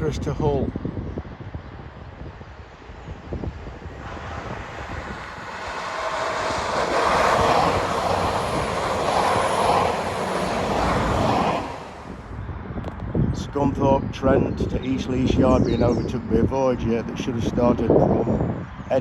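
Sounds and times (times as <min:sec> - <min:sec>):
train passing: 0:02.6 - 0:12.3.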